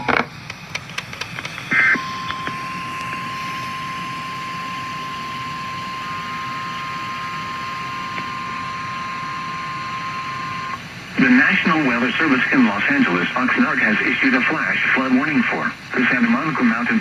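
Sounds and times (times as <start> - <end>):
clicks: 7.9 - 10.8.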